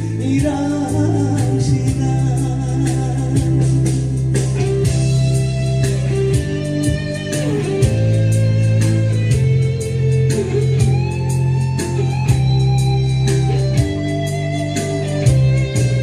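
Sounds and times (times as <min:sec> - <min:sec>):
bass: 0:00.0 - 0:16.0
electric guitar melody with bent notes: 0:00.0 - 0:16.0
drum beat: 0:03.4 - 0:12.6.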